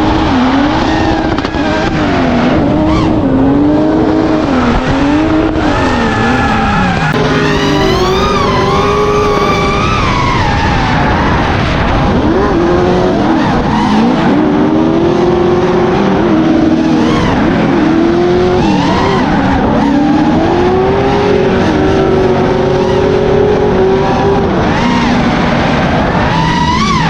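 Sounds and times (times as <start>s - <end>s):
car engines revving: 0.0s - 27.0s
tyres squealing: 5.6s - 11.0s.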